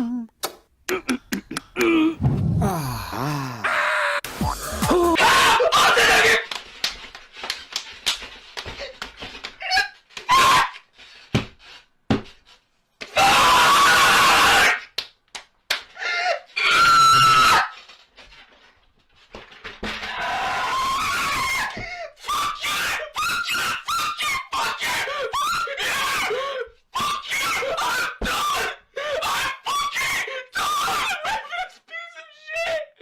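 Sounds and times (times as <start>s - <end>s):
person screaming: 1.8s - 6.4s.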